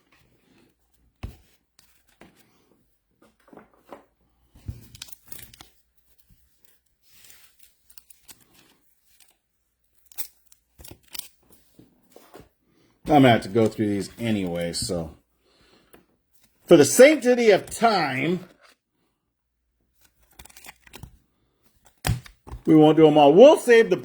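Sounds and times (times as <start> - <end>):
wrappers tearing and crinkling: 10.0 - 11.4, 20.1 - 21.1
cards clicking: 20.0 - 21.2.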